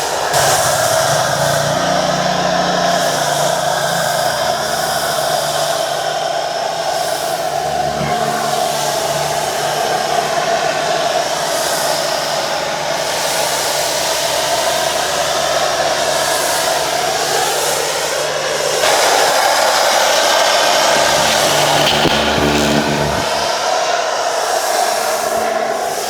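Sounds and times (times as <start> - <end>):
cleaning machine rushing: 0.0 - 25.6
low motor hum: 0.4 - 16.3, 20.7 - 23.6.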